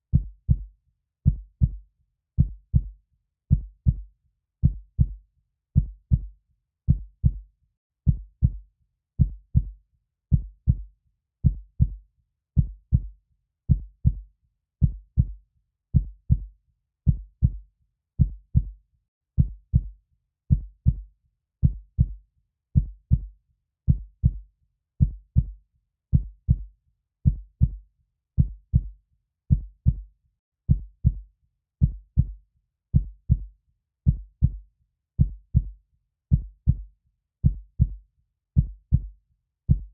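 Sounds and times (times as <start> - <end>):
heartbeat thumps: 2.4 - 2.9, 4.6 - 5.2, 5.8 - 6.3, 6.9 - 7.4, 8.1 - 8.6, 9.2 - 9.7, 10.3 - 10.8, 11.4 - 12.0, 14.8 - 15.4, 16.0 - 16.5, 17.1 - 17.6, 18.2 - 18.7, 19.4 - 19.9, 21.6 - 22.2, 22.8 - 23.3, 23.9 - 24.4, 25.0 - 25.5, 26.1 - 26.6, 27.3 - 27.8, 28.4 - 28.9, 29.5 - 30.0, 30.7 - 31.2, 31.8 - 32.4, 33.0 - 33.5, 34.1 - 34.6, 35.2 - 36.8, 37.4 - 38.0, 38.6 - 39.1.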